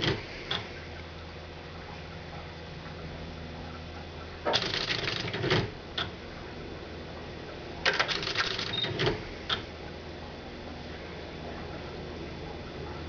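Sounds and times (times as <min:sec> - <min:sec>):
steady hum: 0:00.0 - 0:13.0
electronic typewriter clattering: 0:04.5 - 0:05.8, 0:07.8 - 0:09.2.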